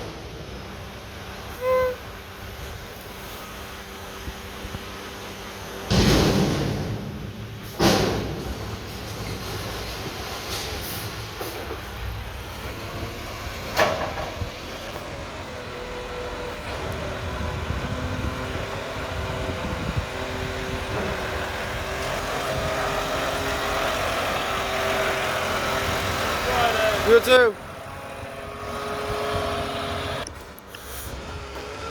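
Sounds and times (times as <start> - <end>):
garbage truck diesel engine running: 0.0 - 31.9
sharp bang: 5.9 - 8.6.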